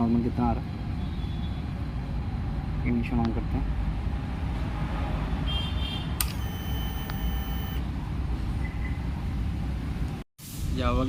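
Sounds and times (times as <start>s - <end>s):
short high beeping: 6.3s - 7.8s.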